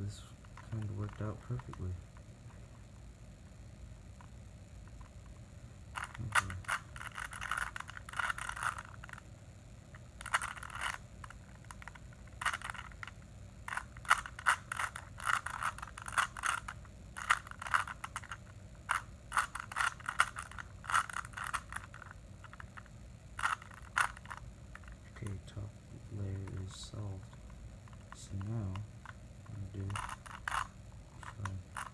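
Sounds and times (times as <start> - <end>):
plastic puzzle cube clicking: 6.0 - 9.2, 10.2 - 25.0, 29.8 - 31.9.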